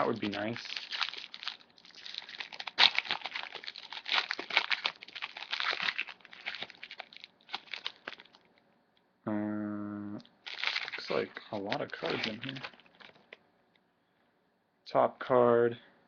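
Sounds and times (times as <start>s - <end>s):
wrapper crinkling and tearing: 0.0s - 8.5s, 10.4s - 13.4s.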